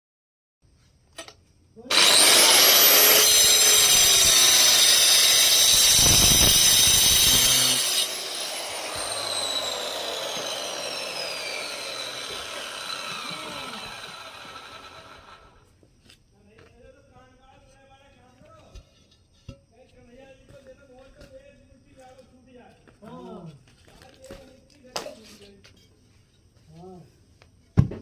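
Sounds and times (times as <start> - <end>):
power tool running: 1.9 - 15.6
power tool winding down whine: 1.9 - 15.6.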